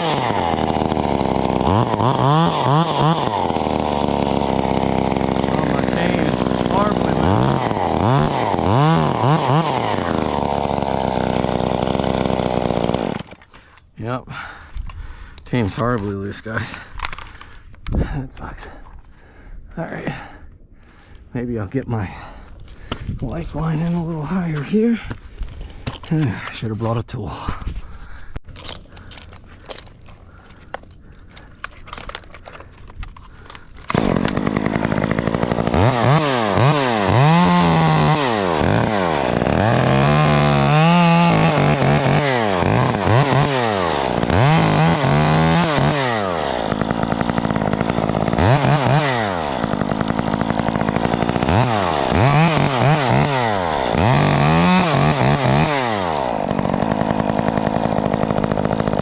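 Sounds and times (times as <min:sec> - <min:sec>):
chainsaw revving while cutting: 0:00.0 - 0:13.4, 0:33.9 - 0:59.0.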